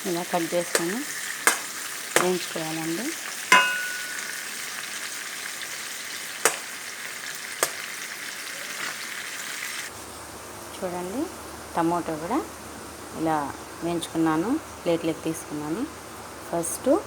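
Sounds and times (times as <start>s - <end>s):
tomatoes sizzling in oil: 0.0s - 15.9s
utensil knocking against pan: 1.5s - 2.4s, 3.5s - 4.4s.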